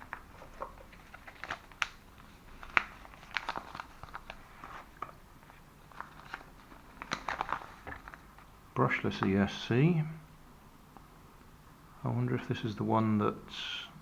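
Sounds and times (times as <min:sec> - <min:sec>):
parcel packaging crinkling: 0:00.0 - 0:08.5.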